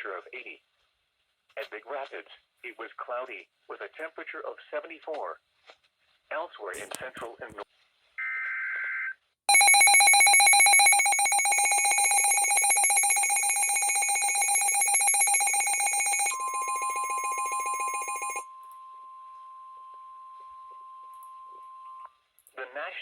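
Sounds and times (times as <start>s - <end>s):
pulsing electronic alarm: 9.5s - 18.8s
steady warning tone: 9.5s - 21.9s.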